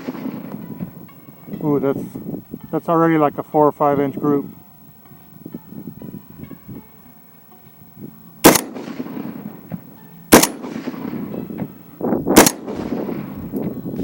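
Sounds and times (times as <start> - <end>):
rifle shots with echo: 0.0 - 1.2, 8.4 - 13.6.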